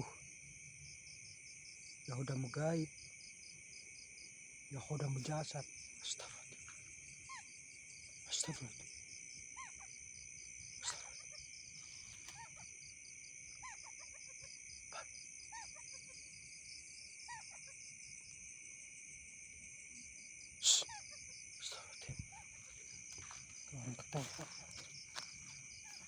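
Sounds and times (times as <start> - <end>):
crickets and insects shrilling: 4.7 - 16.6, 20.4 - 26.0.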